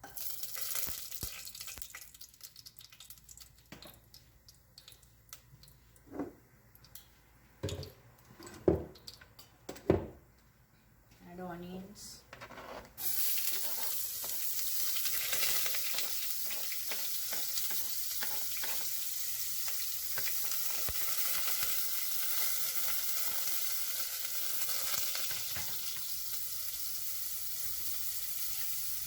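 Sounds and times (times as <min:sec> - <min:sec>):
onion sizzling in oil: 0:00.0 - 0:04.2, 0:13.0 - 0:29.0
oil popping and crackling: 0:00.0 - 0:05.9, 0:08.9 - 0:09.5, 0:13.0 - 0:29.0.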